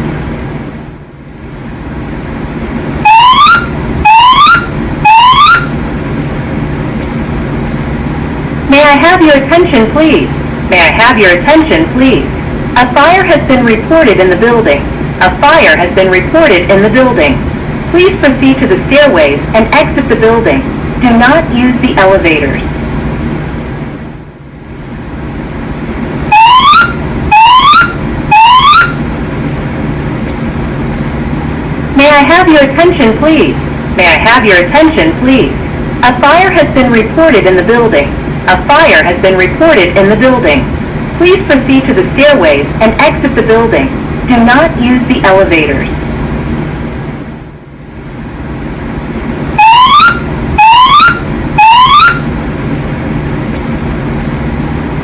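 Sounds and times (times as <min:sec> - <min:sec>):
low steady hum: 0:00.0 - 0:55.0
steady low rumble: 0:00.0 - 0:55.0
fire alarm whoop sweeps: 0:03.0 - 0:05.8, 0:26.3 - 0:29.0, 0:49.6 - 0:52.3.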